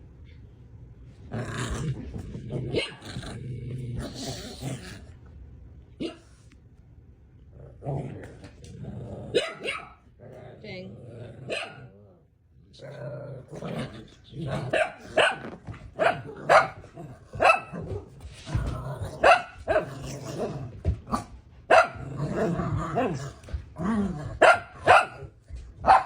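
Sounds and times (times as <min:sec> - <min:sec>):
dog growling: 0:01.3 - 0:05.3, 0:07.5 - 0:09.6, 0:10.2 - 0:15.6, 0:16.2 - 0:21.2, 0:21.9 - 0:24.4
dog barking: 0:06.0 - 0:06.3, 0:09.3 - 0:10.0, 0:11.5 - 0:11.9, 0:14.7 - 0:16.8, 0:17.4 - 0:17.9, 0:19.2 - 0:19.9, 0:21.7 - 0:22.0, 0:24.4 - 0:26.0.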